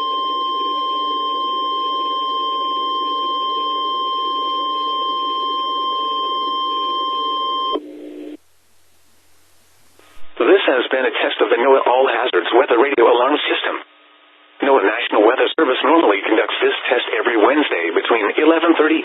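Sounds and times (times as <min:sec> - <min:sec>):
high warning tone with buzz: 0:00.0 - 0:08.4
faint radio hiss: 0:07.7 - 0:19.0.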